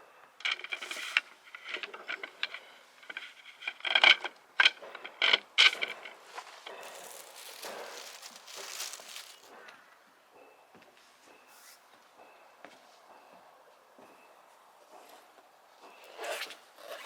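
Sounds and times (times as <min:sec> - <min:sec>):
soft rustling: 0:06.8 - 0:09.6.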